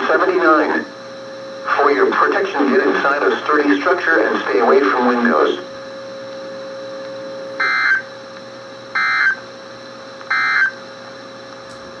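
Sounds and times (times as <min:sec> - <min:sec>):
shrill warbling digital tones: 0:07.6 - 0:08.0, 0:09.0 - 0:09.4, 0:10.3 - 0:10.7.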